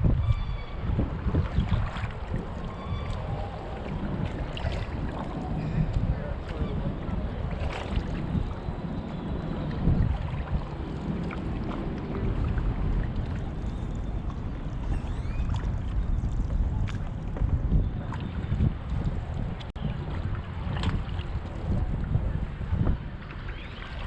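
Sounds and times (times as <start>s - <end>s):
wind rumbling on microphone: 0.0s - 24.0s
water washing from paddling: 0.8s - 24.0s
faint knocks and splashes: 1.3s - 6.8s, 7.5s - 8.5s, 9.7s - 21.4s.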